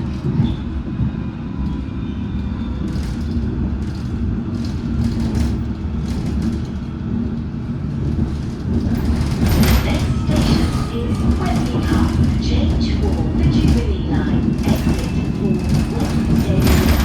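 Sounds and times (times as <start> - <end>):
train wheels rumbling on track: 0.0 - 17.0.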